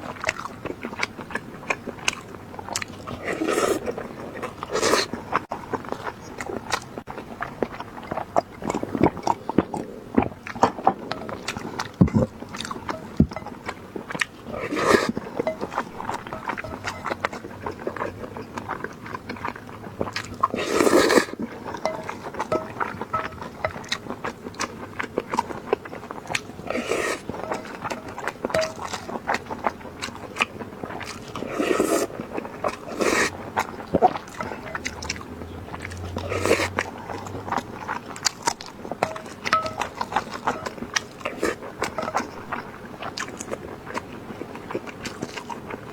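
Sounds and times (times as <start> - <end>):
person chewing food: 0.0 - 45.9.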